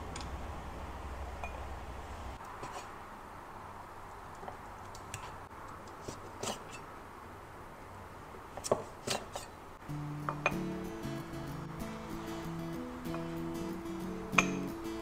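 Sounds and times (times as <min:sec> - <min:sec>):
music: 0:09.8 - 0:15.0.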